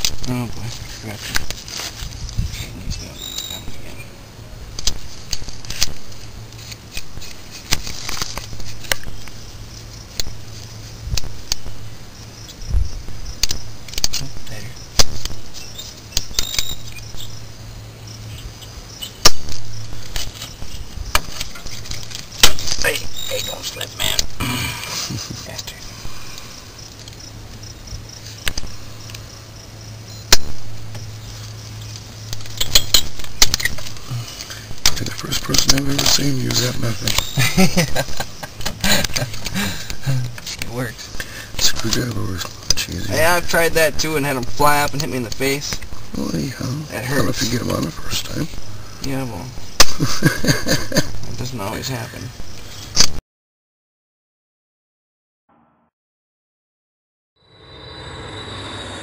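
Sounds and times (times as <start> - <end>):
steady low hum: 0.0 - 53.0
sharp metal click: 16.1 - 17.0, 28.4 - 29.2
metal scrape: 57.5 - 59.0.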